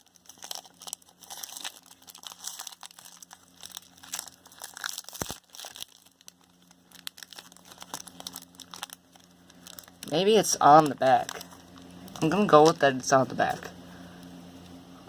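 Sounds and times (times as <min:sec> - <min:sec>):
plastic wrapper crinkling and tearing: 0:00.0 - 0:13.6.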